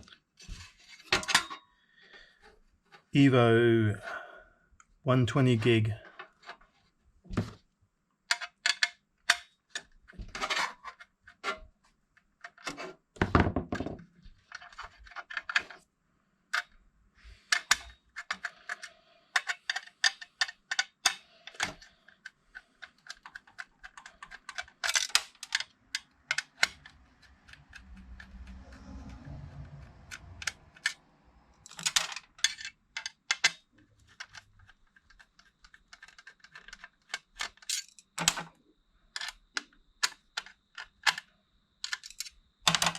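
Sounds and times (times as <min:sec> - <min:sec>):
computer parts clicking and tapping: 0:17.5 - 0:31.0, 0:31.6 - 0:42.9.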